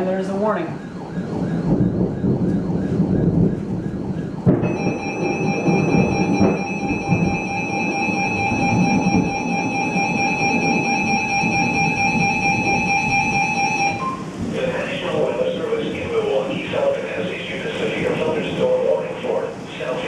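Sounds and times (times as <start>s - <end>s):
steady rushing noise: 0.0s - 20.0s
shrill alert tone: 4.6s - 14.3s.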